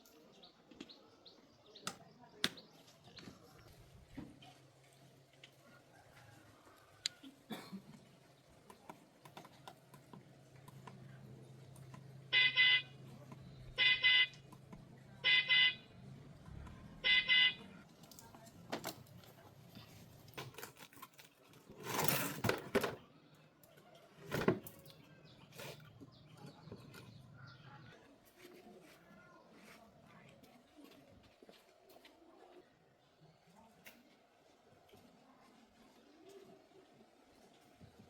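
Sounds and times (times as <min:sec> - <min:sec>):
car horn beeps: 0:12.3 - 0:14.5, 0:15.2 - 0:16.0, 0:17.0 - 0:17.8.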